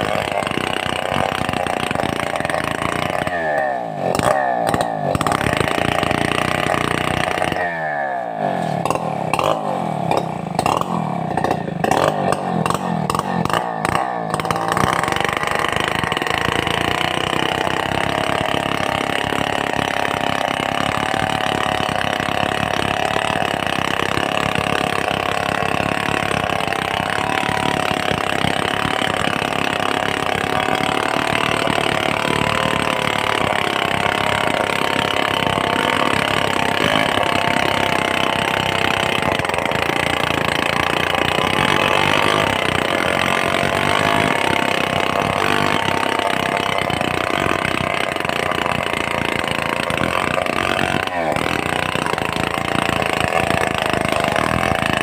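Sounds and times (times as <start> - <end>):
chainsaw running: 0.0 - 55.0.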